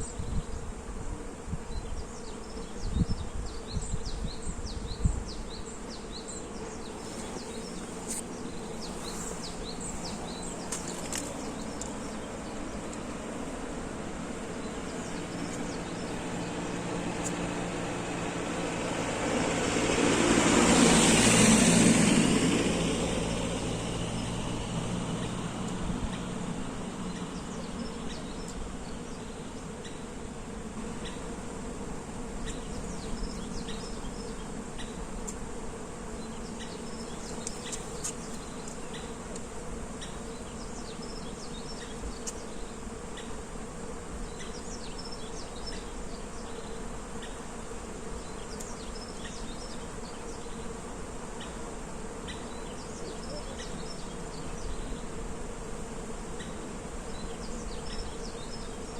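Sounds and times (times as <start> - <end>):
small birds chirping: 1.7 - 13.2, 27.0 - 30.2, 36.1 - 43.4, 44.2 - 50.8, 52.2 - 55.2
bees buzzing: 3.8 - 58.9.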